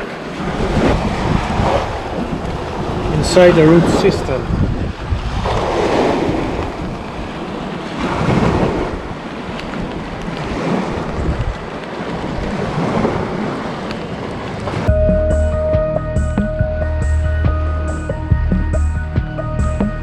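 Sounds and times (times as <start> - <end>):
surf washing on shore: 0.0 - 14.9
wind buffeting microphone: 0.0 - 20.0.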